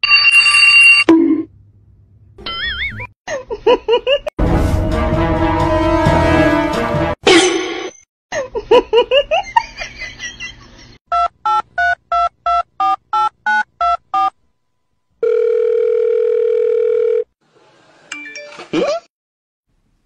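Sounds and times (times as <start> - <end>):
music: 4.4 - 7.2
telephone call tone: 15.2 - 17.3.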